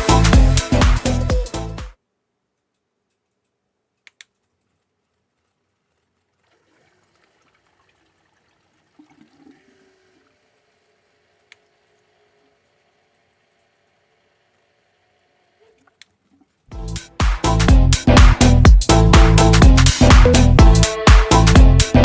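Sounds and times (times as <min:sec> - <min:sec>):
small plastic clicks: 0:02.6 - 0:05.6
liquid pouring and trickling: 0:06.3 - 0:10.8.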